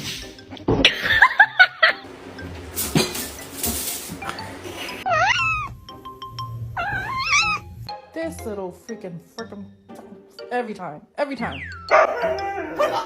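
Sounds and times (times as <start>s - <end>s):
background music: 0.0s - 13.0s
people laughing: 0.8s - 2.0s
cat meowing: 5.1s - 5.7s, 6.8s - 7.6s.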